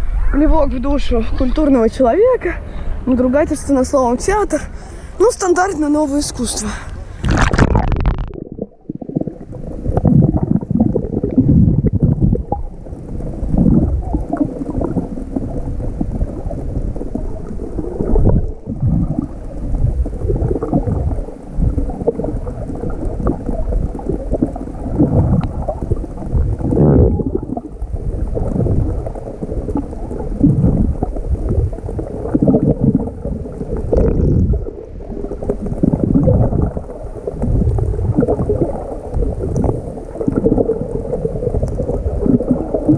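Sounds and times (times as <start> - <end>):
water rushing and gurgling underwater: 0.0 - 42.9.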